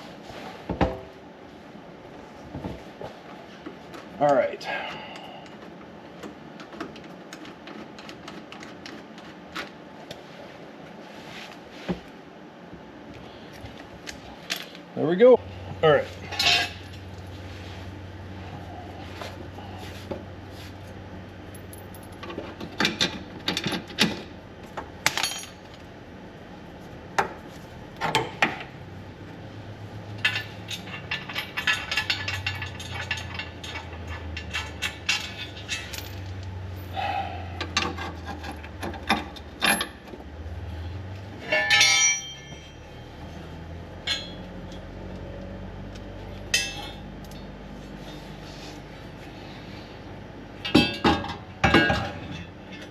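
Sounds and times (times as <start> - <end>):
steady low hum: 0.0 - 52.9
tools clinking on metal plate: 41.4 - 42.8, 46.5 - 47.0.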